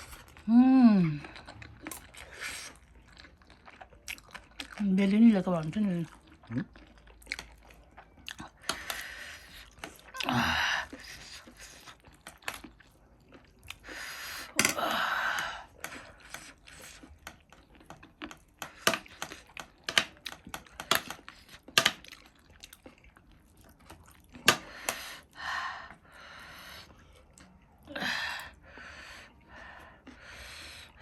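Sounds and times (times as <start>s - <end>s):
wet chewing and smacking: 0.0s - 14.6s, 15.3s - 31.0s
breathy sounds: 8.5s - 12.0s, 13.8s - 17.1s, 24.4s - 31.0s.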